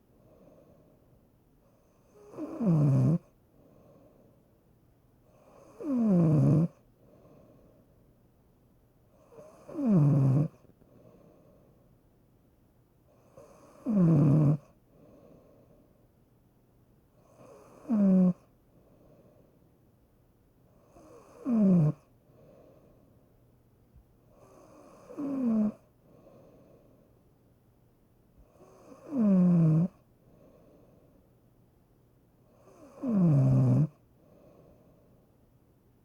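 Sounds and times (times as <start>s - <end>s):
loud snoring: 2.1s - 3.3s, 5.4s - 6.8s, 9.2s - 10.6s, 13.3s - 14.7s, 17.2s - 18.4s, 20.9s - 22.1s, 24.4s - 25.8s, 28.5s - 30.0s, 32.6s - 34.0s.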